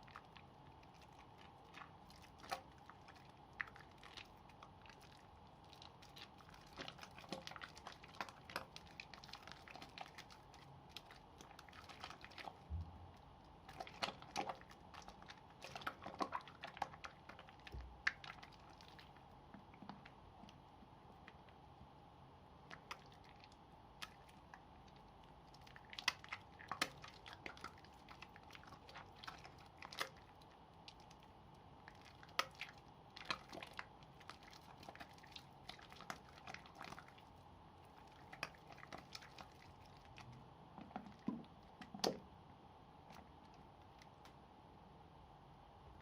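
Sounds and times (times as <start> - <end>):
soap crackling while lathered: 0.0 - 21.8, 22.6 - 42.4.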